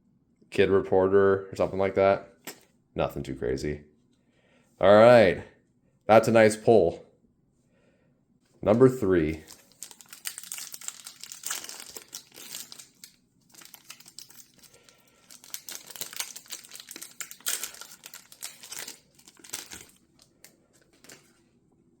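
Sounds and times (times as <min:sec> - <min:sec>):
plastic wrapper crinkling and tearing: 0:09.3 - 0:21.3.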